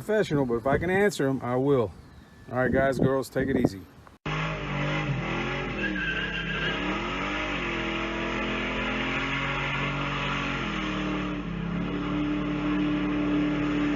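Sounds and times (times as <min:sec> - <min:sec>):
car engine revving: 0:04.3 - 0:13.9.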